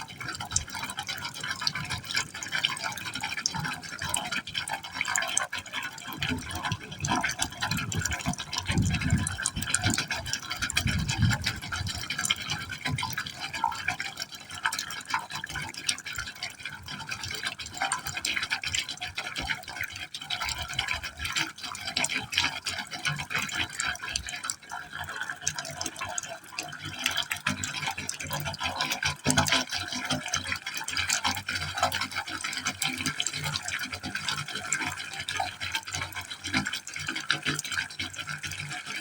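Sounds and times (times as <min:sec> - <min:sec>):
water pouring into a pipe: 0:00.0 - 0:39.0.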